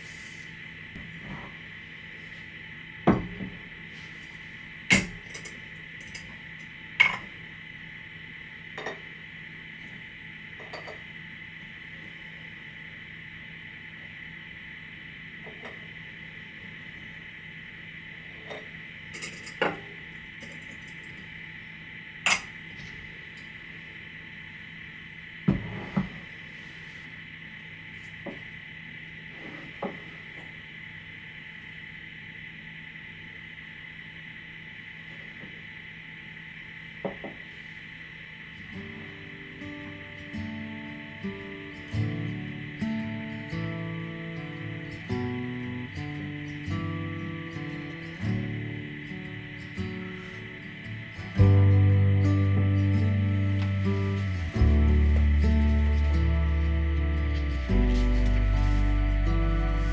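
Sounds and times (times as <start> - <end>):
faint steady hum: 0.0 - 59.9
dishes and utensils clinking: 10.6 - 11.1
steady hum: 35.6 - 59.9.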